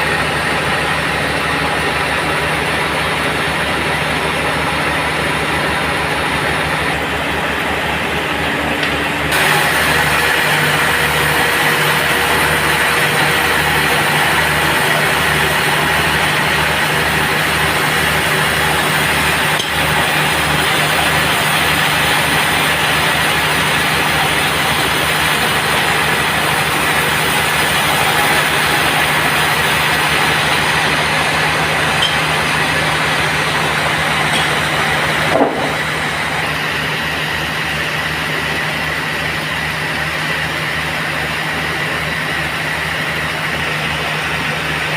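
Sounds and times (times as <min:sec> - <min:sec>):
bandsaw machinery running: 0:00.0 - 0:44.9
sharp knock: 0:35.3 - 0:35.8.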